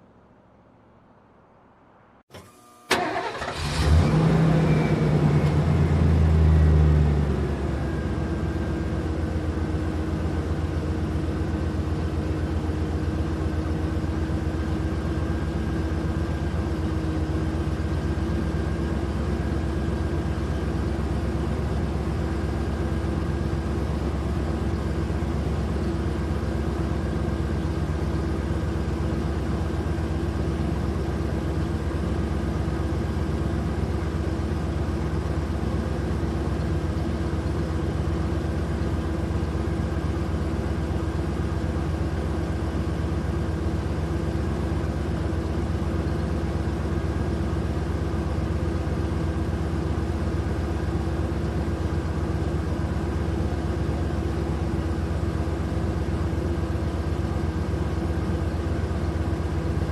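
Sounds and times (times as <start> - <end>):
engine starting click: 2.3 - 4.2
engine running and idling: 2.3 - 59.9.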